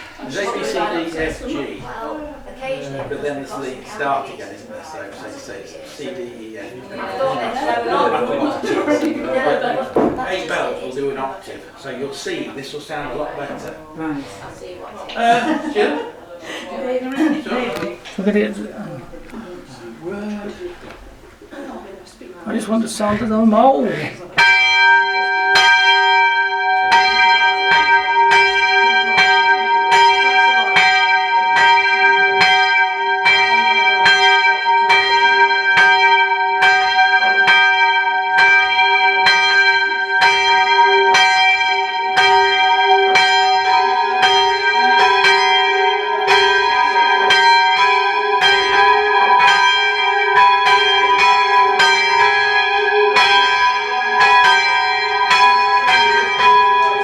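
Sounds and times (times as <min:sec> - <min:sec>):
church bells ringing: 0:22.5 - 0:57.0.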